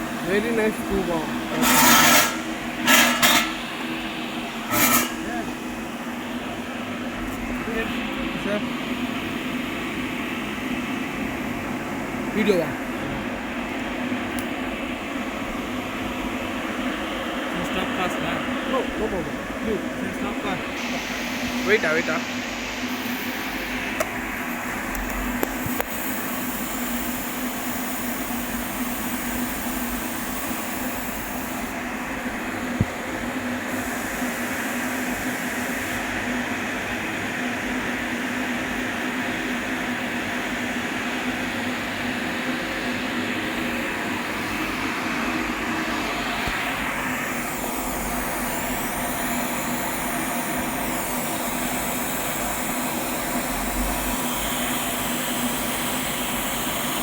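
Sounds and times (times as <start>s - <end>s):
welding arc hissing: 0.0s - 8.6s, 17.5s - 36.4s, 43.4s - 57.0s
welding equipment humming: 0.0s - 57.0s.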